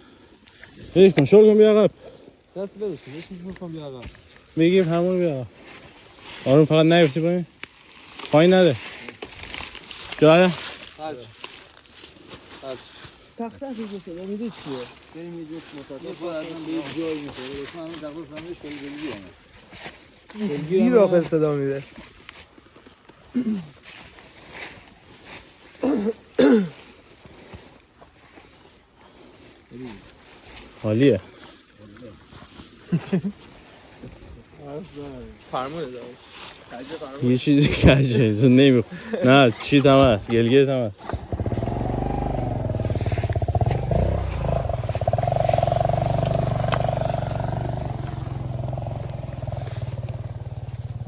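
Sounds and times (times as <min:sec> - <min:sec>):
man clearing his throat: 0:23.3 - 0:23.8, 0:25.8 - 0:26.8
motorcycle engine idling: 0:41.0 - 0:51.0.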